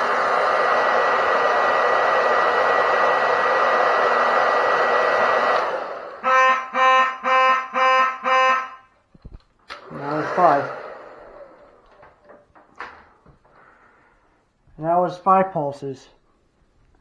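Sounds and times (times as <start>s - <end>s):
hair dryer blowing with whine: 0.0s - 8.8s, 9.7s - 12.4s
fire alarm horn pulses: 6.2s - 9.0s.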